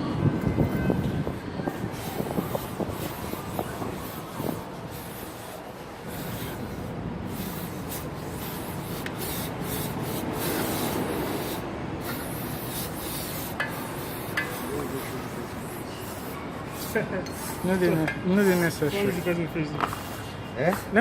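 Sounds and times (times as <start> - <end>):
rubbing and scraping noise: 1.2 - 21.0.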